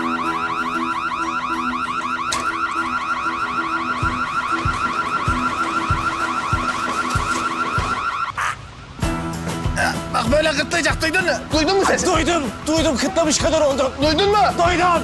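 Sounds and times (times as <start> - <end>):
pulsing low tone: 0.0 - 8.2
burglar alarm warbling chirps: 0.0 - 8.6.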